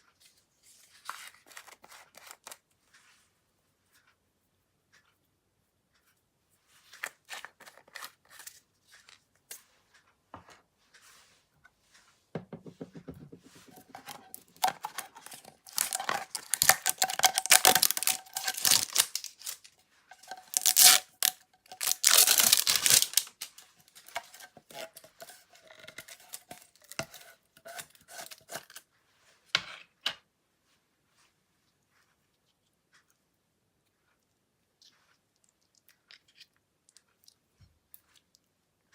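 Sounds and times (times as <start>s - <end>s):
hands squishing slime: 13.8s - 23.5s
slime tearing crackle: 14.6s - 23.6s.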